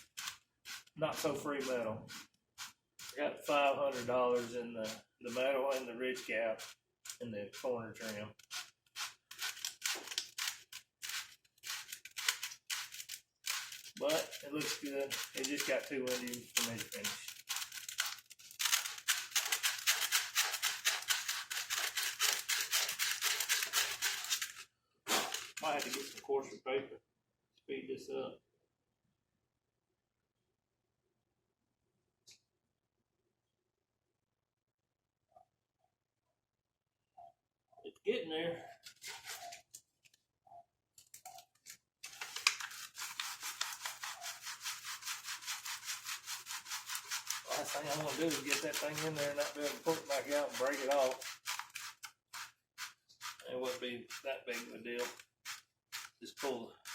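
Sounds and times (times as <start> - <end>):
sandpaper rasping on plastic: 0.0 - 26.2, 38.8 - 39.7, 42.1 - 56.9.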